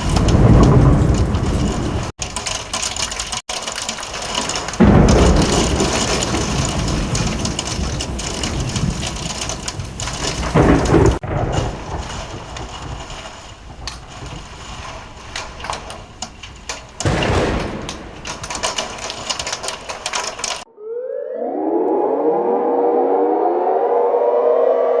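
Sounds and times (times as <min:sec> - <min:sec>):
heavy rain: 0:00.0 - 0:20.6
thunder clap: 0:00.0 - 0:20.7
thunder rolling: 0:00.0 - 0:20.7.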